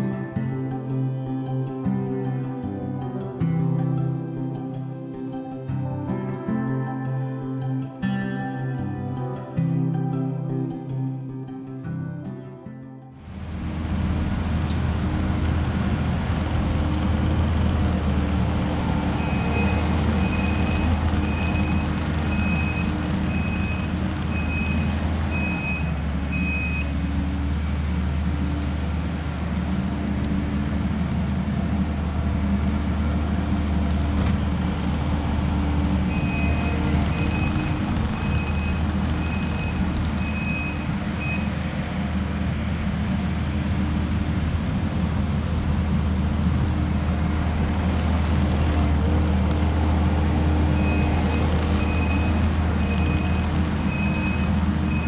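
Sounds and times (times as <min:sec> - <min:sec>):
heavy equipment diesel engine: 0:13.2 - 0:55.0
backup alarm beeping: 0:19.2 - 0:26.9, 0:36.1 - 0:41.6, 0:50.8 - 0:55.0.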